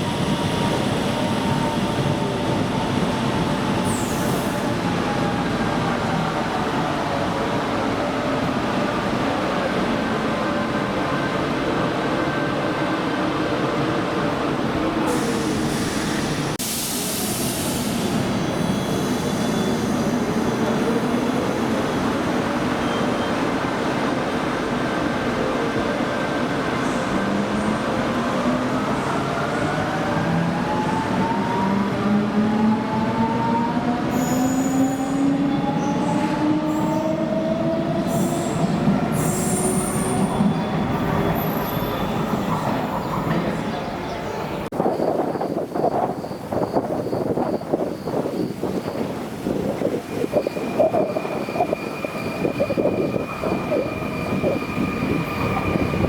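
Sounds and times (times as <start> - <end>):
electric train rumbling: 0.0 - 56.0
hiss: 15.1 - 18.3.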